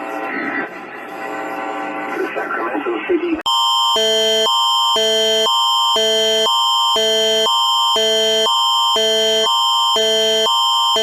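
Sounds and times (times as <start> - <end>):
electronic alarm alternating chords: 3.5 - 11.0
steady high tone: 3.5 - 11.0.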